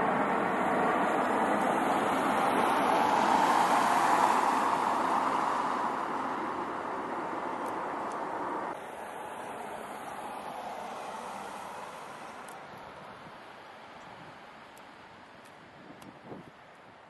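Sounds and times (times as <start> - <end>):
jet engines roaring: 0.0 - 8.8.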